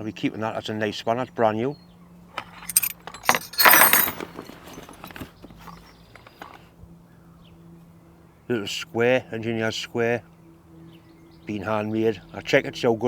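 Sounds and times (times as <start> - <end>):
metal tools clinking: 2.4 - 6.6
metal tools rattling clatter: 2.4 - 6.6.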